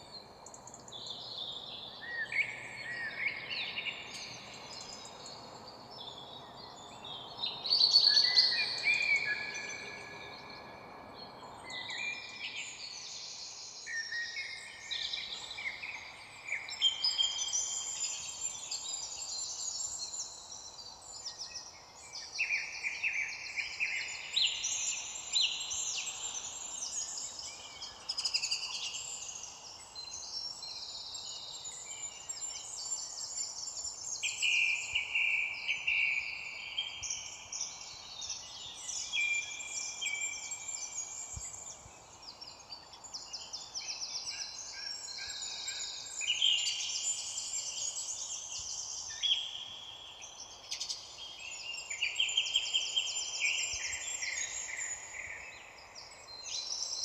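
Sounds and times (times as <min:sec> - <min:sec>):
faint background hiss: 0:00.0 - 0:57.0
songbirds singing: 0:00.0 - 0:57.0.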